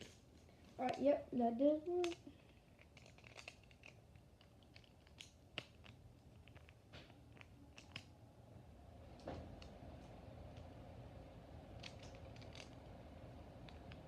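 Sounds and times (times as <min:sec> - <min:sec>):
small plastic parts clicking: 0:01.8 - 0:08.1, 0:11.8 - 0:12.9.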